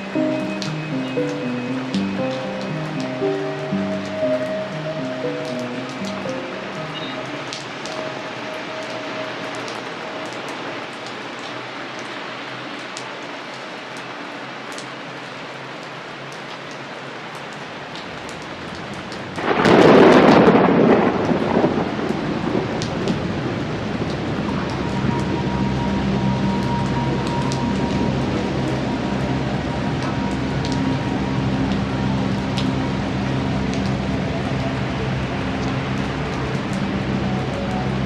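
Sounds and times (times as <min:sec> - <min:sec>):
steady rain falling: 0:00.0 - 0:38.0
thunder clap rumbling: 0:19.2 - 0:38.0.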